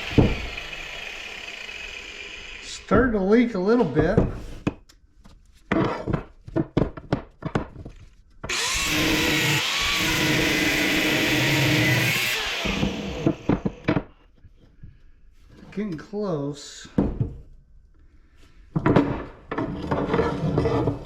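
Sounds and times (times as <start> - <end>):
power tool cutting steel: 0.0 - 3.0, 8.5 - 13.8.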